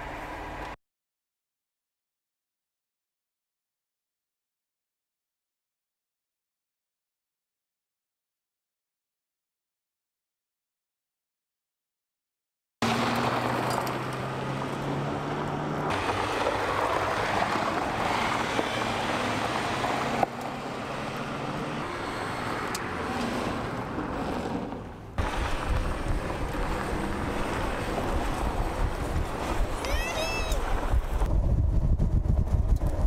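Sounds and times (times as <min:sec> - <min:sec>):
car engine running: 0:12.8 - 0:33.0
wind buffeting microphone: 0:25.2 - 0:33.0.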